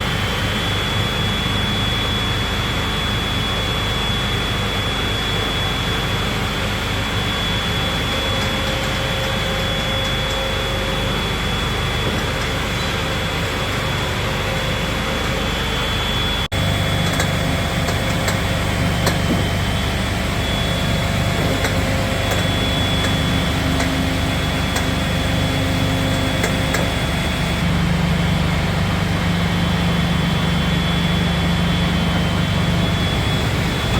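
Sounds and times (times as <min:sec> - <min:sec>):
deep hum: 0:00.0 - 0:33.9
high whine: 0:00.0 - 0:33.9
frame saw running: 0:10.3 - 0:33.9.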